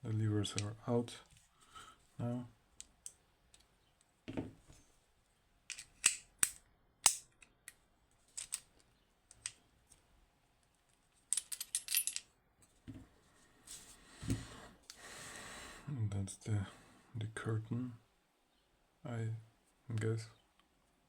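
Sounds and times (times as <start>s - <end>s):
small metal parts clicking: 5.7s - 9.6s, 11.3s - 12.2s
metal parts rattling: 11.3s - 12.2s.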